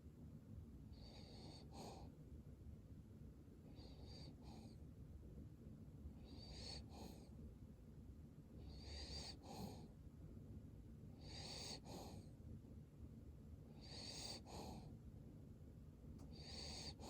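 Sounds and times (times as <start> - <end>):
dog snoring with whistling wheeze: 0.9 - 2.1, 3.7 - 4.8, 6.2 - 7.3, 8.6 - 9.9, 11.2 - 12.3, 13.8 - 14.9, 16.3 - 17.0.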